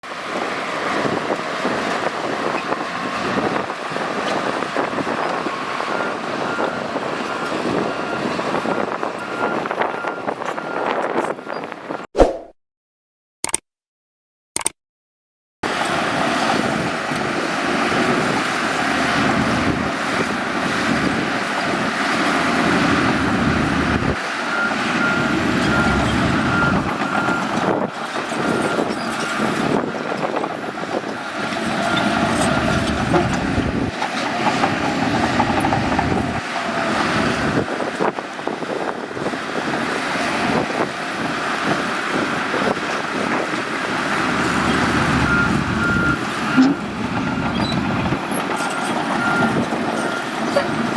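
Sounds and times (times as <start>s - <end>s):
bulldozer diesel engine: 0.0s - 12.0s, 15.6s - 50.9s
reversing alarm beeping: 24.5s - 27.6s, 45.1s - 47.8s, 48.7s - 50.2s.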